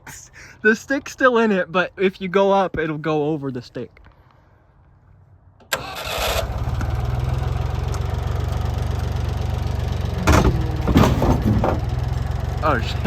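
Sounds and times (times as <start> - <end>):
loader engine starting and idling: 5.6 - 13.0.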